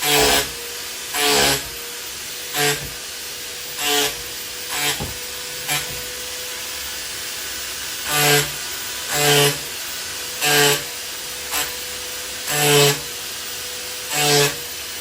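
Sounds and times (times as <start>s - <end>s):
power chisel biting into wood: 0.0s - 7.3s, 7.9s - 13.2s.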